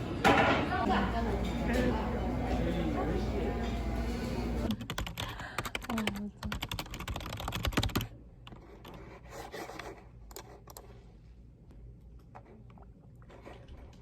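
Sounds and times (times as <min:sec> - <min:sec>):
computer keyboard typing: 0:04.7 - 0:08.1.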